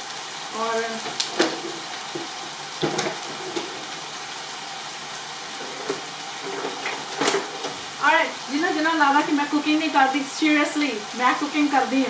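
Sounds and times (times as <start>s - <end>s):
food sizzling in oil: 0.0s - 12.0s.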